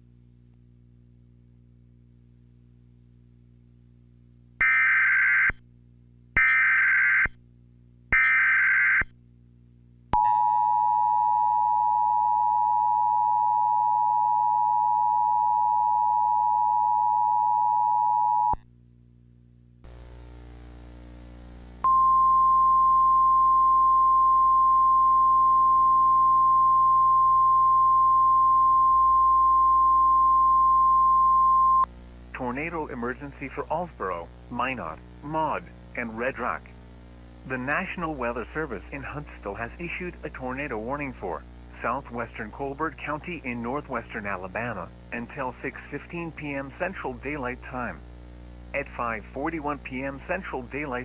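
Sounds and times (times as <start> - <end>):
steady alarm tone: 4.6 - 5.5, 6.4 - 7.3, 8.2 - 9.0, 21.9 - 31.8.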